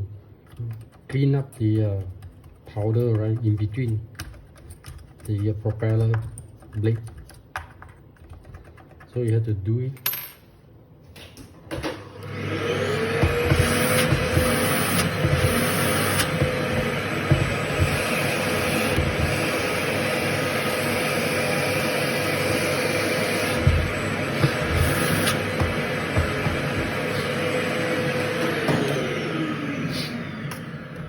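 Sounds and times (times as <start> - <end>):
vacuum cleaner running: 11.8 - 31.0.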